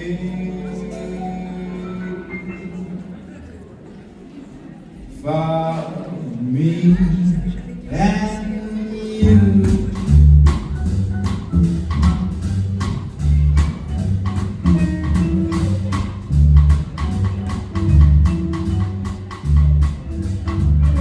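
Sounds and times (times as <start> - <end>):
bass line: 7.0 - 21.0.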